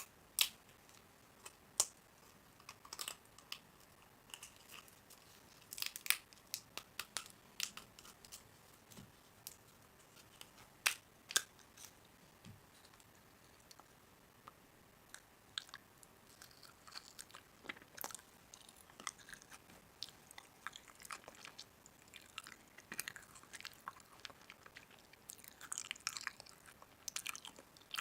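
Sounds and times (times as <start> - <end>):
food wrapping crinkling and tearing: 2.6 - 10.6.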